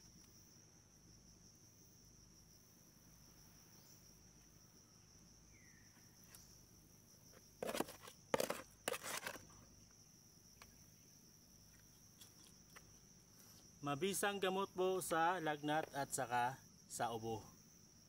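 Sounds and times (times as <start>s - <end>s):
crickets trilling: 0.0s - 18.0s
rustling: 7.6s - 9.4s.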